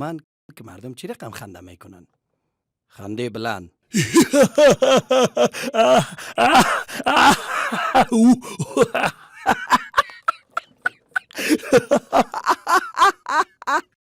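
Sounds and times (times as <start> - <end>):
person laughing loudly: 4.0 - 14.0.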